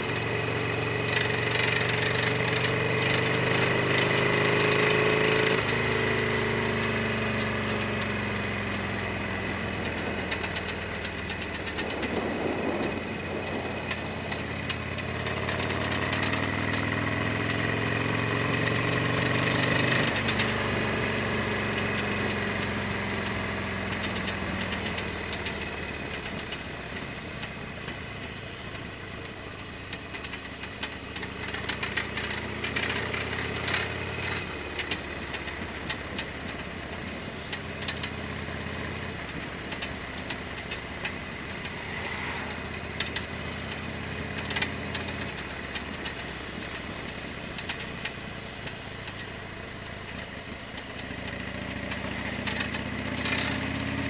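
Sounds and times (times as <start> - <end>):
motorcycle engine running: 0.0 - 54.0
sharp ticks and rattles: 7.7 - 16.9, 23.3 - 42.0, 42.9 - 54.0.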